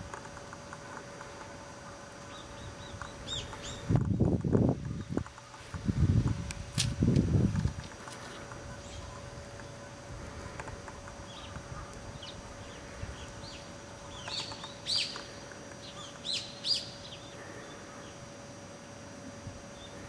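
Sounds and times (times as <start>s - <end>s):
faint steady hum: 0.0s - 20.0s
downward-sweeping bird chirps: 11.3s - 15.2s, 15.8s - 18.2s.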